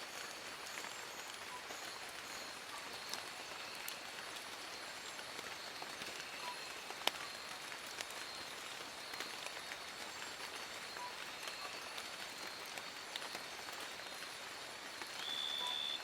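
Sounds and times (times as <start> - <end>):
rain falling on leaves: 0.0 - 16.0.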